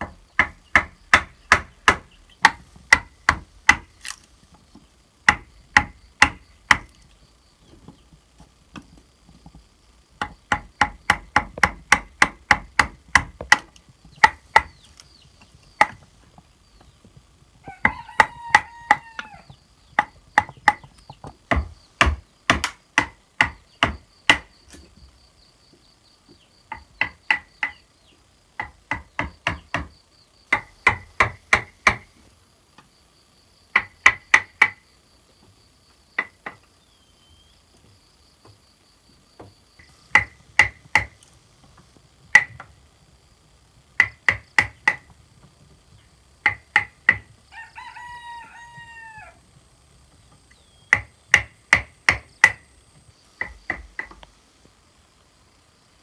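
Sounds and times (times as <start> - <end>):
hammer driving nails into wood: 0.0 - 4.2, 5.2 - 7.0, 10.2 - 14.9, 21.5 - 24.5, 30.5 - 32.1, 39.8 - 41.2.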